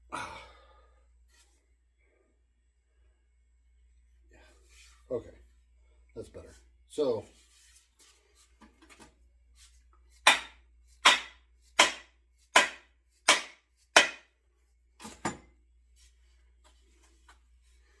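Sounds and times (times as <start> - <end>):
sharp wooden knocks: 10.3 - 14.2.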